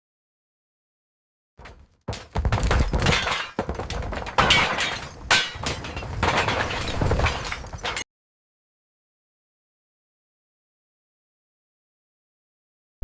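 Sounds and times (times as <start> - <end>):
rubble crashing and shattering: 1.6 - 8.1.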